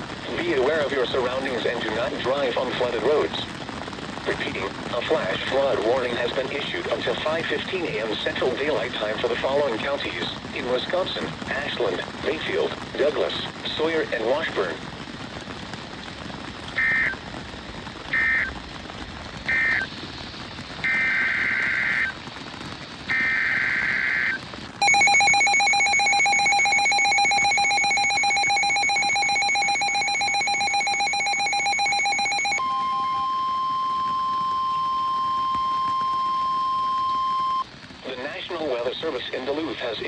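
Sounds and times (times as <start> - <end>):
screeching data bursts: 16.8 - 17.2, 18.1 - 18.5, 19.5 - 19.9, 20.8 - 22.2, 23.1 - 37.6
steady warning alarm tone: 19.5 - 19.9, 23.1 - 37.6.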